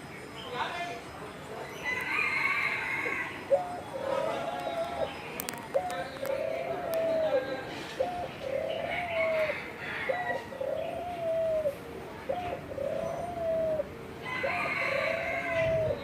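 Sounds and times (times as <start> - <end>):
birds chirping faintly: 0.0 - 16.0.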